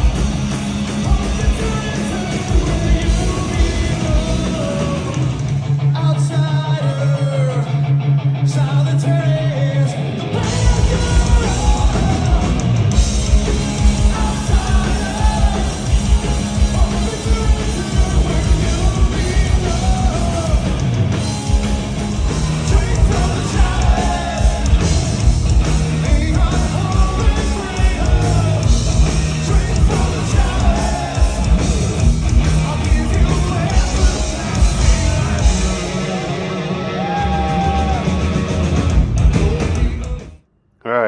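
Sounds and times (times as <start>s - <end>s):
heavy metal band playing: 0.0s - 40.4s
drums: 0.0s - 40.5s
person singing and shouting: 25.9s - 38.3s.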